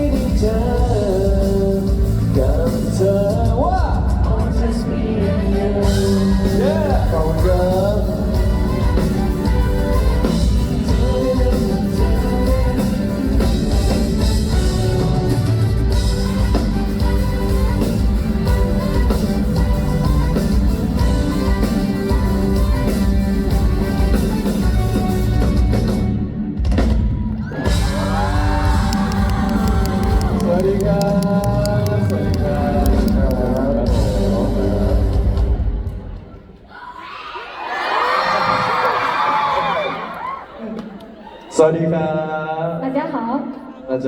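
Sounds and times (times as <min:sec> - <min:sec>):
person singing: 0:00.0 - 0:15.2, 0:27.5 - 0:35.9
live band playing pop-rock: 0:00.0 - 0:36.3.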